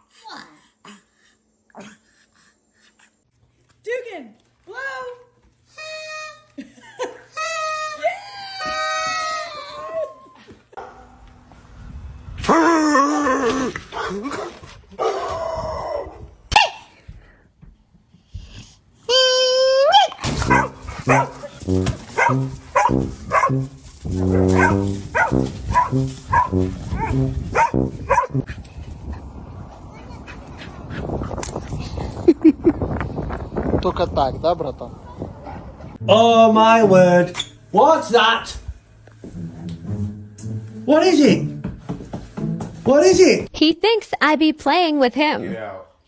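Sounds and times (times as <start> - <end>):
dog barking: 10.8 - 11.2, 20.3 - 23.7, 24.5 - 28.4
low rumbling: 20.4 - 28.6.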